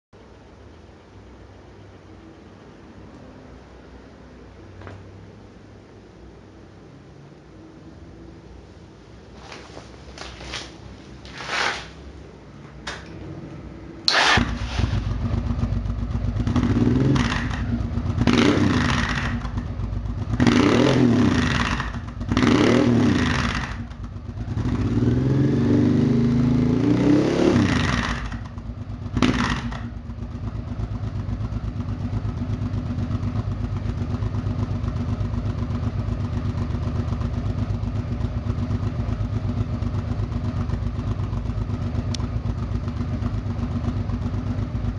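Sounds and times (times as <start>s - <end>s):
short sharp engine noises: 14.1s - 15.3s
motorcycle engine revving: 14.1s - 44.9s.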